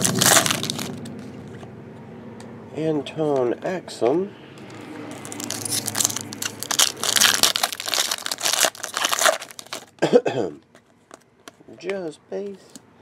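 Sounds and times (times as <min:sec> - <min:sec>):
foil wrapper tearing and crinkling: 0:00.0 - 0:01.0, 0:05.2 - 0:09.9.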